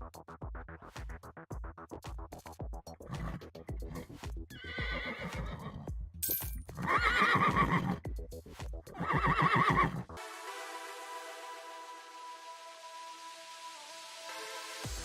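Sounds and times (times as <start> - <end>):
electronic music with beat: 0.0 - 15.0
horse whinnying: 4.5 - 5.9, 6.8 - 8.0, 9.0 - 10.0.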